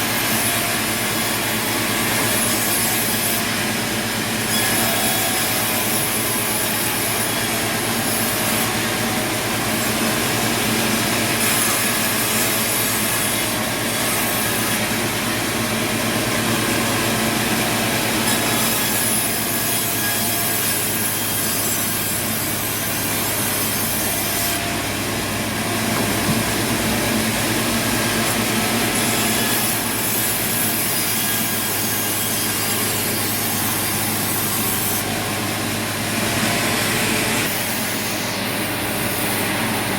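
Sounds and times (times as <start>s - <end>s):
saw cutting through wood: 0.0s - 39.9s
machine humming: 22.3s - 30.8s.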